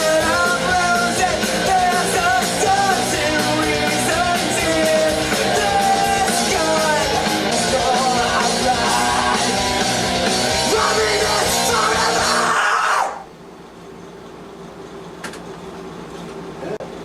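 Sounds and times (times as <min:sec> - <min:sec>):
punk rock backing track: 0:00.0 - 0:12.6
man singing: 0:00.0 - 0:13.1.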